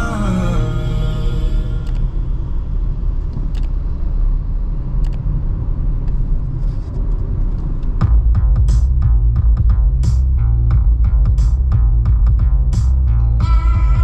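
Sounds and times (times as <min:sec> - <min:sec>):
bass-heavy music from car speakers: 0:00.0 - 0:02.5, 0:08.0 - 0:14.0
car cabin road rumble: 0:00.0 - 0:14.0.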